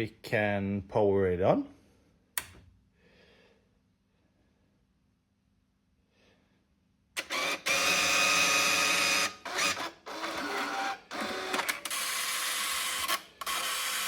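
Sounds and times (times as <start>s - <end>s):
bill validator motors whirring: 7.2s - 14.0s.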